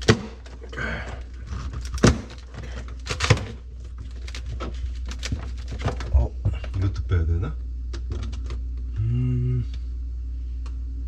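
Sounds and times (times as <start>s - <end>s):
low steady hum: 0.0s - 11.0s
plastic parts knocking: 1.4s - 6.8s.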